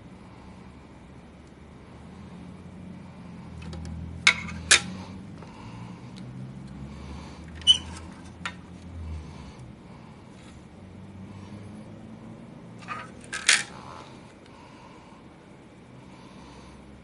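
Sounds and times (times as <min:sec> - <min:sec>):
low steady hum: 0:00.0 - 0:17.0
small tools clicking and clinking: 0:12.8 - 0:13.8.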